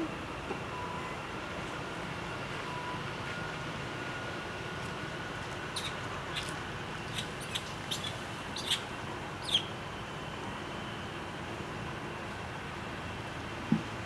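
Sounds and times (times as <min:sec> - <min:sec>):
background hiss: 0:05.8 - 0:09.7
young monkey squeaking: 0:05.8 - 0:09.7.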